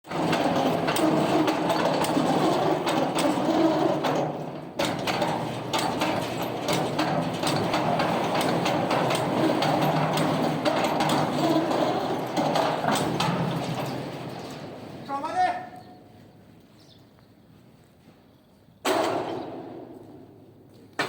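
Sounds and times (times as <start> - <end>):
heavy machinery running: 0.1 - 15.1
metallic knocks and clanks: 0.1 - 15.2, 18.8 - 20.2.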